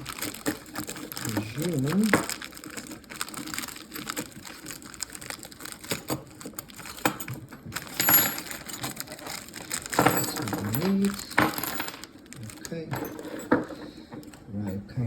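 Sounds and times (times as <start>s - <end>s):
metal tools clicking and rattling: 5.8s - 14.9s.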